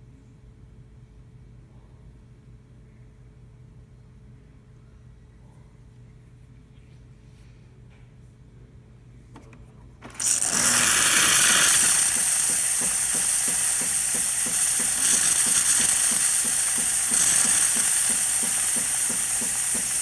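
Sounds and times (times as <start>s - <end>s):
coffee machine steam hissing: 10.1s - 20.0s.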